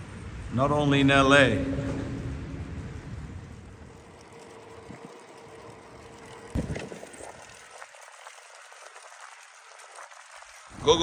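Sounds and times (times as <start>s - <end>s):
wind noise on microphone: 0.0s - 4.1s
low rumble: 0.0s - 4.2s.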